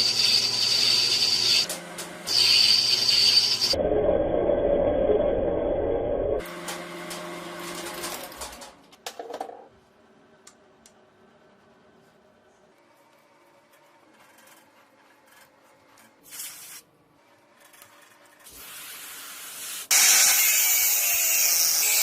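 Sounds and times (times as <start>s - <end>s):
small electric tool motor running: 0.0s - 3.8s.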